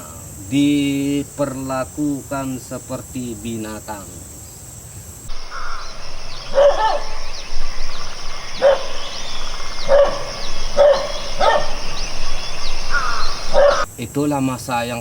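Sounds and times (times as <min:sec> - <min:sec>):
high insect drone: 0:05.2 - 0:14.6
short loud animal calls: 0:05.3 - 0:13.9.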